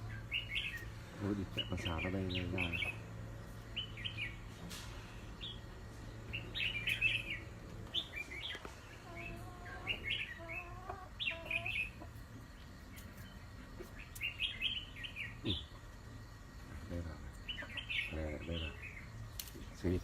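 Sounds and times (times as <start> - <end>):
birds singing bubbly phrases: 0.0 - 3.0, 14.1 - 15.8
lower wavering bird notes: 0.0 - 12.1.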